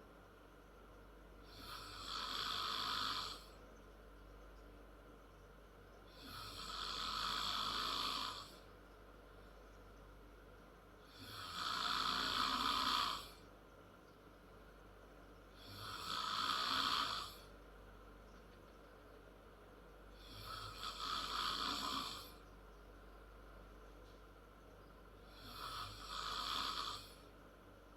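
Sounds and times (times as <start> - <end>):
quiet breathing: 1.3 - 3.8, 5.9 - 9.6, 10.9 - 13.6, 15.3 - 17.6, 20.0 - 22.6, 25.1 - 27.5
girl snoring: 1.5 - 3.5, 6.2 - 8.6, 11.1 - 13.4, 15.6 - 17.5, 20.2 - 22.4, 25.3 - 27.2.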